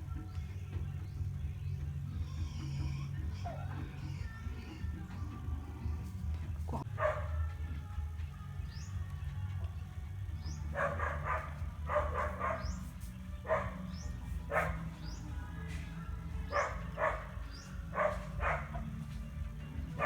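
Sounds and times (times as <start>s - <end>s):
dog barking: 6.7s - 7.5s, 10.6s - 15.2s, 16.4s - 19.2s.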